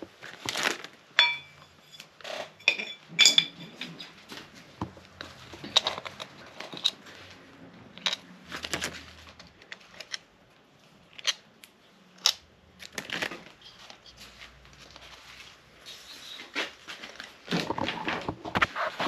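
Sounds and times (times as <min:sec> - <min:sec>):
metallic clicks and clinks: 0:01.2 - 0:04.2.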